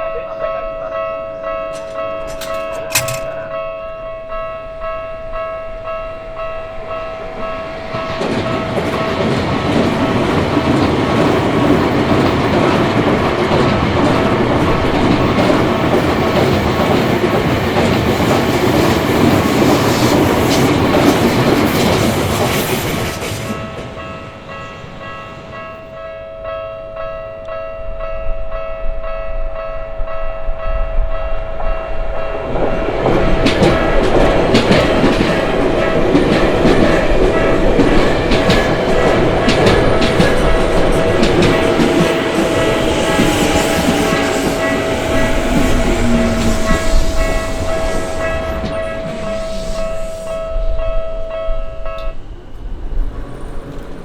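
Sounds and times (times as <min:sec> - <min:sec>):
level crossing alarm bell: 0:00.0 - 0:09.6, 0:33.6 - 0:52.2
electric train passing: 0:00.0 - 0:54.0.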